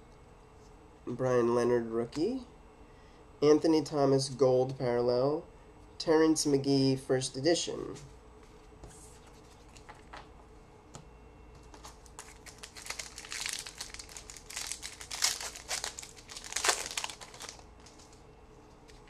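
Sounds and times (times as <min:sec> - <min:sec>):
card pack wrapper crinkling: 0:11.7 - 0:18.2.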